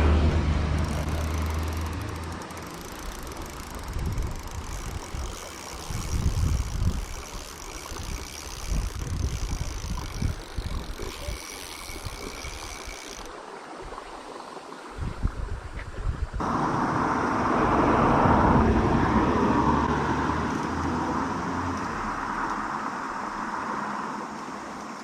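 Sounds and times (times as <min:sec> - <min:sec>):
stream water running: 0:00.0 - 0:25.0
wind rumbling on microphone: 0:03.0 - 0:13.2, 0:14.8 - 0:23.9.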